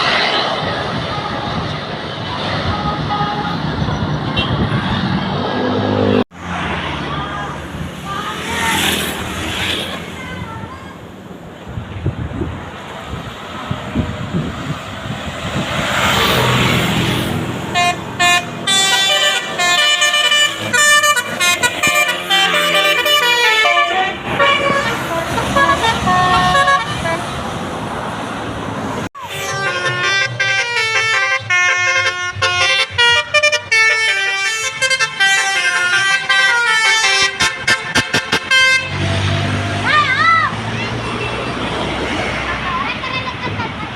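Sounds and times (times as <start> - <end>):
rushing road noise: 0.0 - 43.9
musical air horn tune: 17.7 - 27.3, 29.2 - 39.0.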